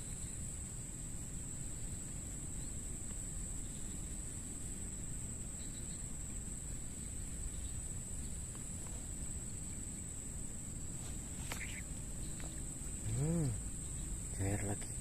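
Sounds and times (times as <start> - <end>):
low outdoor rumble: 0.0 - 15.0
high-pitched insect drone: 9.0 - 15.0.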